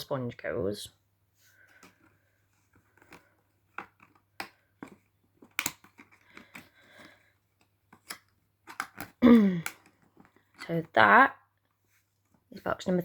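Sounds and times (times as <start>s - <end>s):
packaging clicks and taps: 1.7s - 11.0s.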